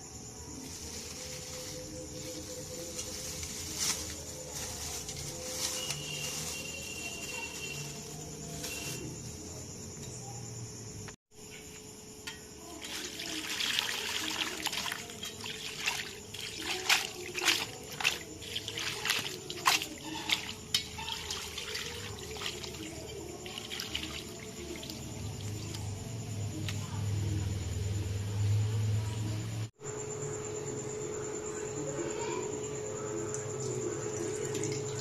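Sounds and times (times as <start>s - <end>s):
water trickling and pouring: 12.8s - 25.7s.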